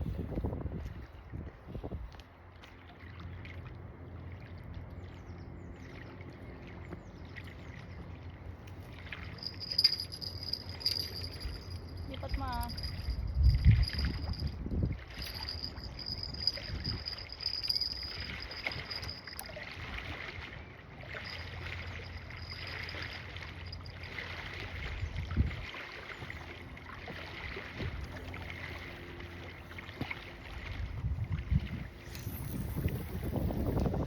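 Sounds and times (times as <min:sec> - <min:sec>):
wind rumble on microphone: 0:00.0 - 0:02.4, 0:09.3 - 0:34.0
wind: 0:00.0 - 0:34.0
water rushing: 0:05.8 - 0:34.0
thin high whine: 0:09.1 - 0:19.6, 0:31.7 - 0:34.0.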